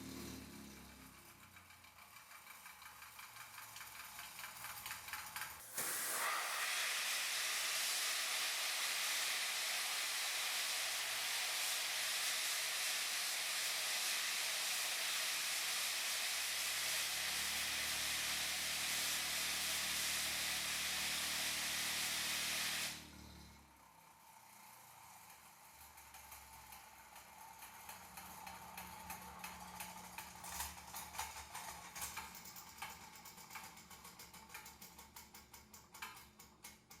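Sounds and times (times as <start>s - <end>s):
compressed air hissing: 5.6s - 23.1s.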